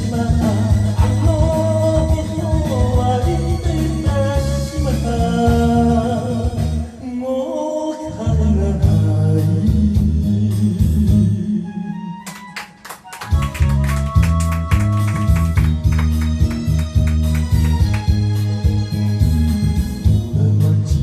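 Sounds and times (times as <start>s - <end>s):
person singing: 0.0s - 12.2s, 18.4s - 21.0s
upbeat pop song: 0.0s - 12.6s, 13.3s - 21.0s.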